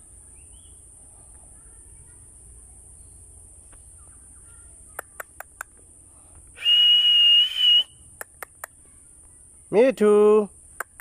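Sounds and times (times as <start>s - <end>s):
parrot clicking: 5.0s - 5.8s, 8.2s - 8.8s
parrot whistle: 6.6s - 8.0s.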